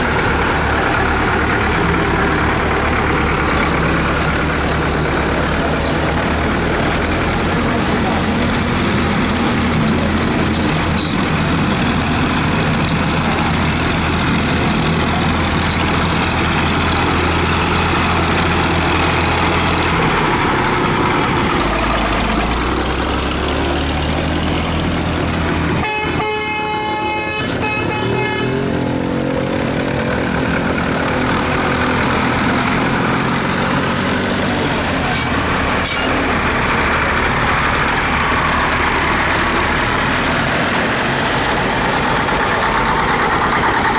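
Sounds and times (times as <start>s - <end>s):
tractor engines running: 0.0s - 43.9s
horn sounding: 25.7s - 28.8s, 35.1s - 36.2s.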